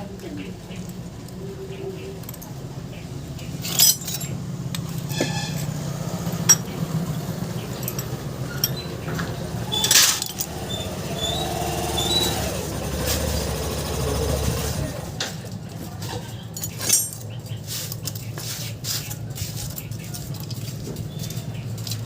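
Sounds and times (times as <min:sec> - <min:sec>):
metal tools clinking: 0:02.0 - 0:02.8, 0:03.4 - 0:11.4, 0:15.6 - 0:18.4, 0:19.0 - 0:22.0
metal parts clattering: 0:02.2 - 0:02.6, 0:03.4 - 0:06.8, 0:07.6 - 0:10.8, 0:16.0 - 0:18.4, 0:19.0 - 0:22.0.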